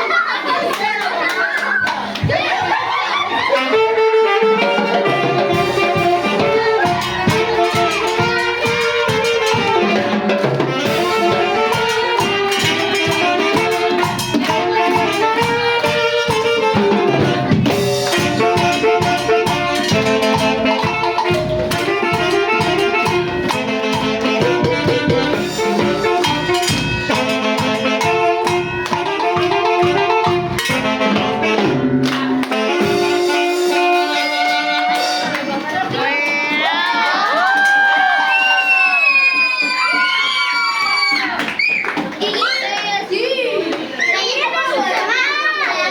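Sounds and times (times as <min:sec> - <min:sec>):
brass band horns: 0:03.4 - 0:39.0
steady drum beat: 0:03.7 - 0:36.8.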